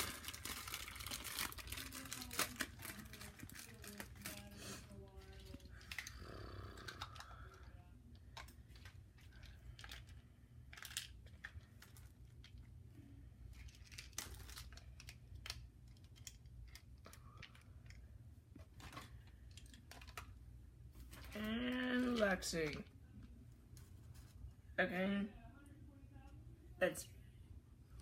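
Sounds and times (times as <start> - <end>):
plastic packaging rustling: 0.0 - 6.2, 8.4 - 12.6, 13.5 - 18.0, 18.6 - 20.4.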